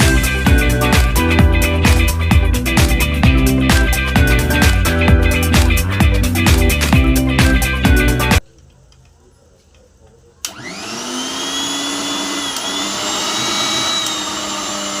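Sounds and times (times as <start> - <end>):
mixer grinder motor whining: 10.5 - 15.0.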